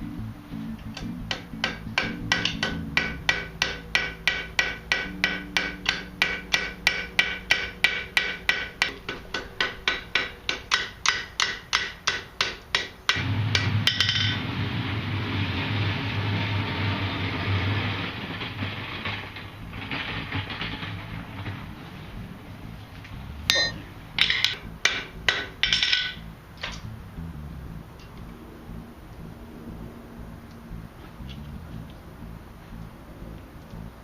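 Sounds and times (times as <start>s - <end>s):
steady rumbling noise: 0.0s - 34.0s
hammer striking iron on anvil: 1.3s - 14.4s, 23.5s - 26.2s.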